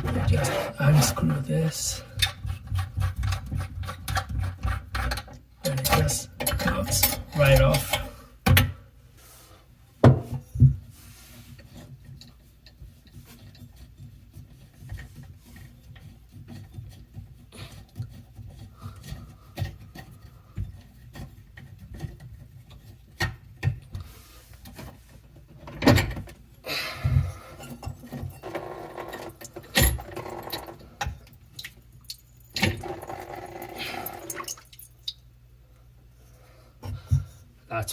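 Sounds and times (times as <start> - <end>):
rubbing and scraping of tools: 0.0 - 8.2, 10.3 - 26.4.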